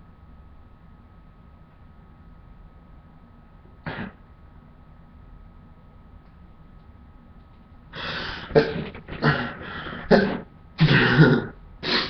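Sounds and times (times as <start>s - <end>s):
man sneezing: 3.9s - 4.2s, 8.0s - 12.0s.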